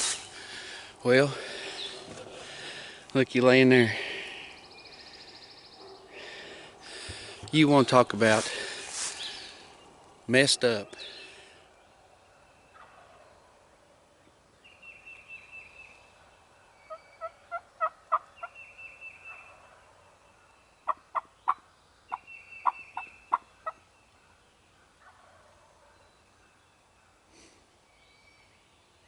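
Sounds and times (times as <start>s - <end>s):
turkey clucking: 16.9s - 18.6s, 20.9s - 23.8s, 25.0s - 25.5s
turkey rattling calls: 16.9s - 18.6s, 20.8s - 23.8s.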